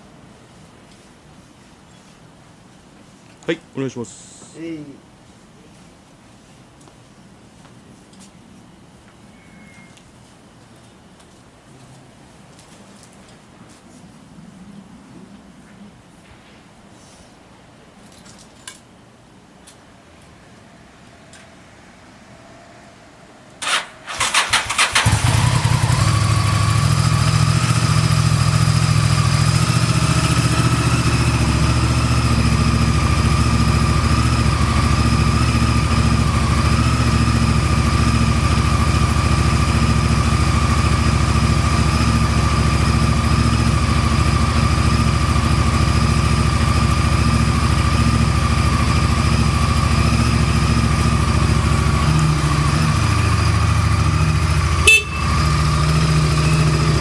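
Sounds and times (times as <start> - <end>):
electric starter cranking: 23.6 - 25.7
motorcycle engine idling: 23.6 - 57.0.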